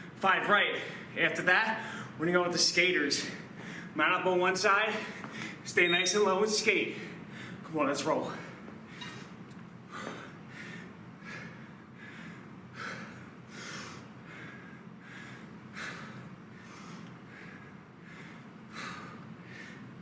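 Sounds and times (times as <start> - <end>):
man breathing hard: 1.8 - 2.2, 3.2 - 4.0, 6.9 - 7.6, 8.2 - 20.0.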